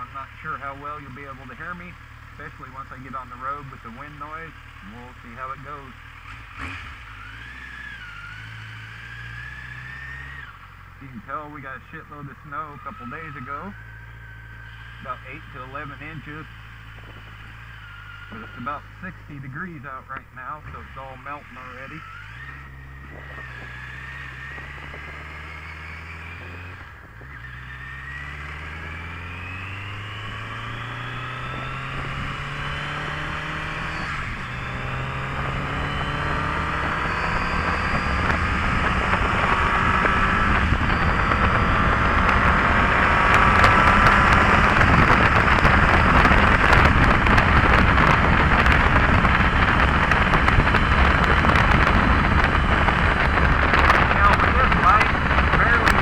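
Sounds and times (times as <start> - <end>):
motorcycle engine accelerating: 0.0 - 56.0
wind noise on microphone: 16.9 - 17.6, 22.5 - 27.6, 28.2 - 56.0.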